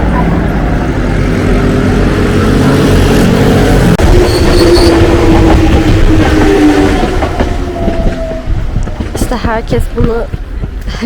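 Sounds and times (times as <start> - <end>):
train rumbling and whining: 0.0 - 11.0.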